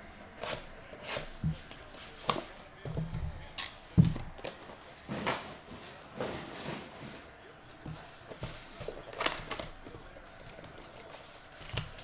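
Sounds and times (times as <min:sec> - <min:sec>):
cards rustling: 0:07.6 - 0:12.0
foil wrappers tearing: 0:08.3 - 0:12.0.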